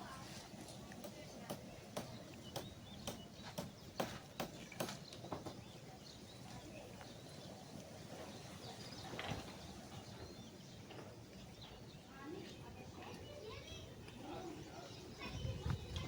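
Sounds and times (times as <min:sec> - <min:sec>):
sharp knocks of hand work: 0:01.0 - 0:05.6.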